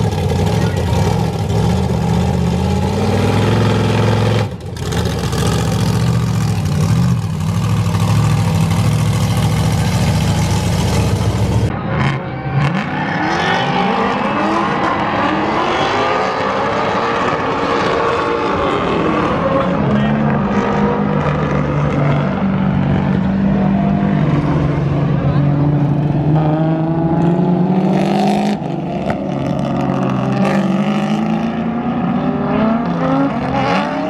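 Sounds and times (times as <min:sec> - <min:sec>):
car engine revving hard: 0:00.0 - 0:23.1.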